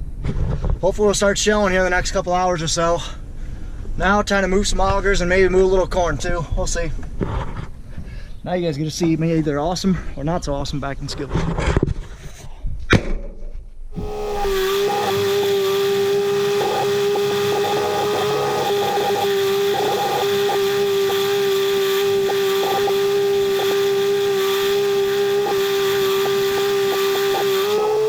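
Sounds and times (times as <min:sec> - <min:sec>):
vacuum cleaner motor whining: 0:14.0 - 0:28.0.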